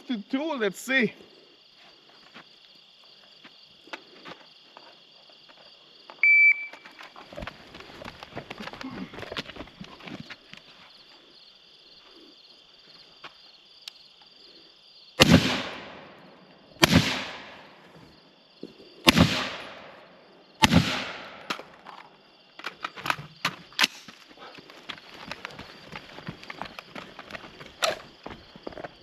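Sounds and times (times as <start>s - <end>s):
echoing gunshots: 15.2s - 17.9s, 19.0s - 21.8s.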